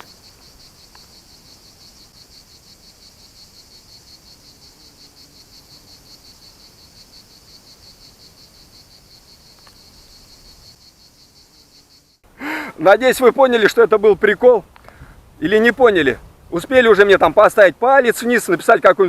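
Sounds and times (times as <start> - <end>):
cricket chirping: 0.0 - 15.0.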